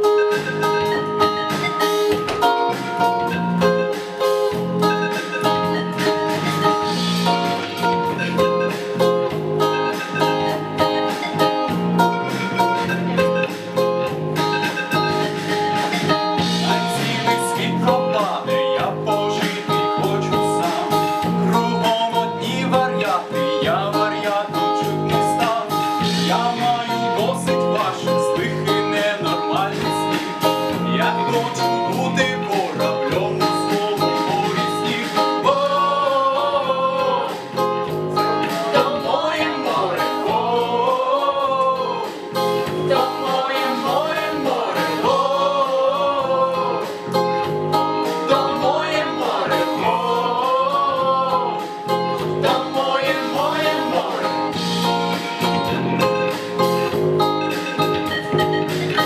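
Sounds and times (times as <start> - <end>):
person singing: 0.0 - 56.7
strummed acoustic guitar: 0.0 - 59.0.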